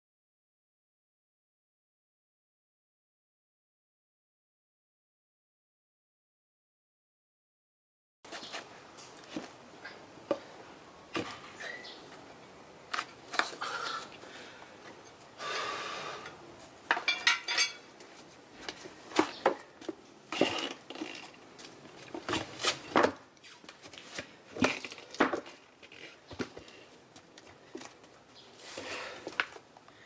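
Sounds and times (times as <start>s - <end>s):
metal hand tools clinking: 16.9s - 17.8s
metallic ring: 17.1s - 17.8s.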